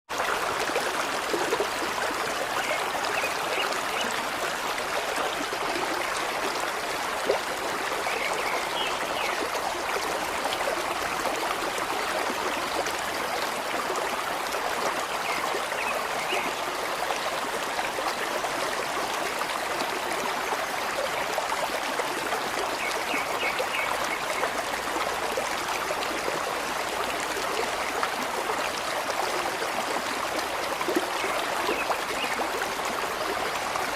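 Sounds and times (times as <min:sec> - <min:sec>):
stream trickling over stones: 0:00.1 - 0:33.9.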